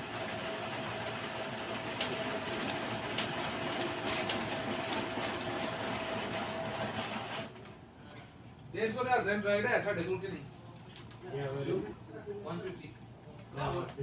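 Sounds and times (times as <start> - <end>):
laser printer whirring: 0.0 - 8.0.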